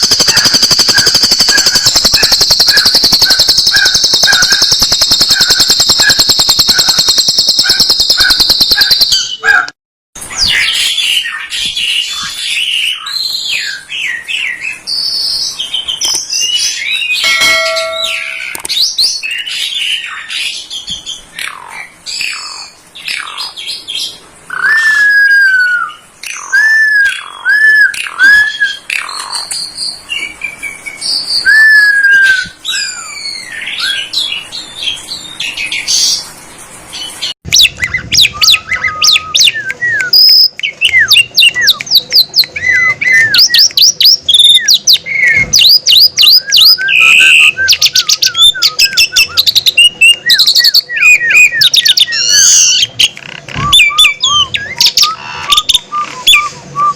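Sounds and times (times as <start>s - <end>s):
rapid sharp chirps: 0.0s - 9.3s
starling singing: 0.0s - 9.5s, 10.4s - 20.7s, 37.0s - 56.9s.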